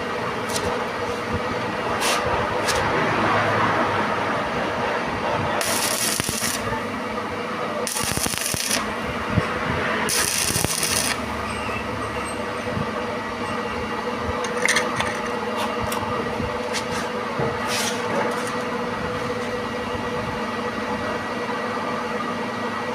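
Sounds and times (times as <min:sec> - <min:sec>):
machine humming: 0:04.3 - 0:13.8.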